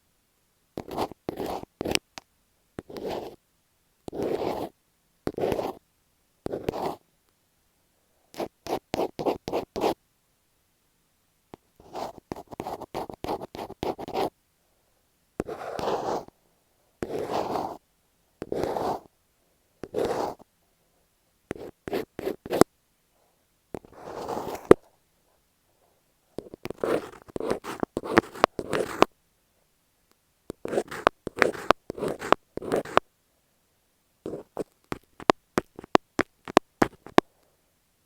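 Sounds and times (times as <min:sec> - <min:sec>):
scratching on masking tape: 0:15.4 - 0:16.3, 0:26.4 - 0:29.1, 0:30.6 - 0:33.0, 0:34.3 - 0:37.2.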